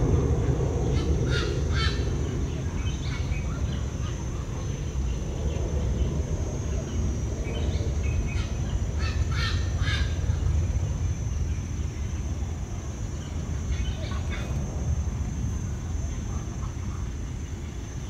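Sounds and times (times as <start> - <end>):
low rumble: 0.0 - 17.7
birds giving harsh calls: 0.8 - 4.3, 7.6 - 10.6.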